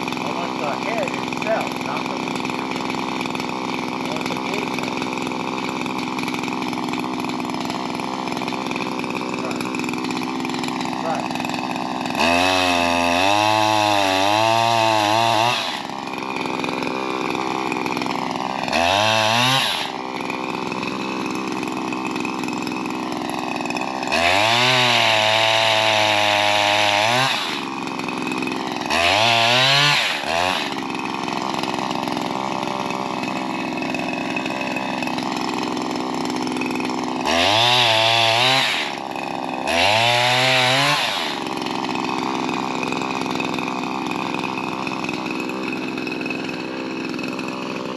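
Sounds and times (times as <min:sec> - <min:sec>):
pole saw engine revving: 0:00.0 - 0:47.9.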